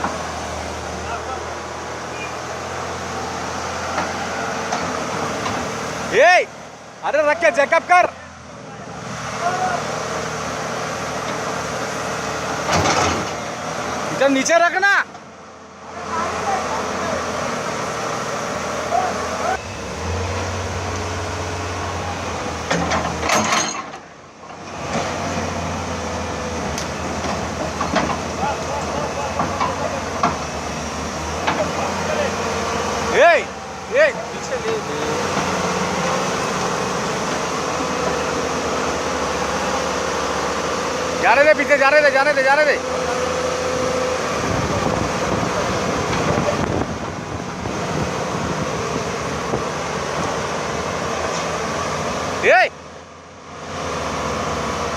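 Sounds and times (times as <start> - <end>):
excavator diesel engine humming: 0.0 - 54.9
sharp metallic clanks: 22.7 - 24.1.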